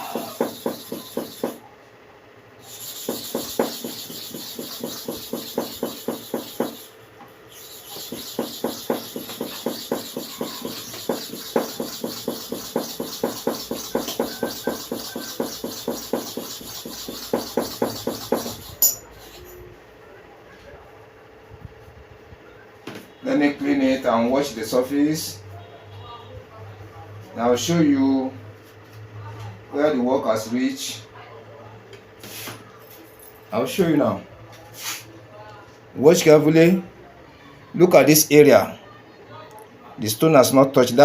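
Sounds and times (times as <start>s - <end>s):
blade grinding on sharpening stone: 2.6s - 6.9s, 7.6s - 19.6s.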